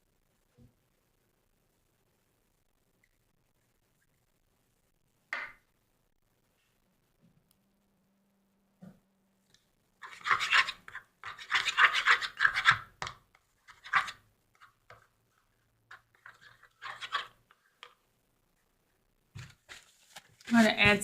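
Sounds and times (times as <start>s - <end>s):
scraping and rubbing: 10.0s - 12.9s, 13.5s - 18.0s.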